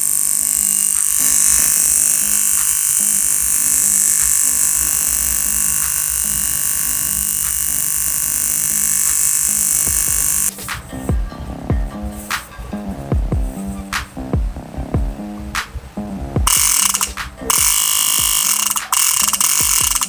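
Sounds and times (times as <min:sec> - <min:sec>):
toy motor buzzing: 0:00.0 - 0:10.5, 0:16.4 - 0:20.0.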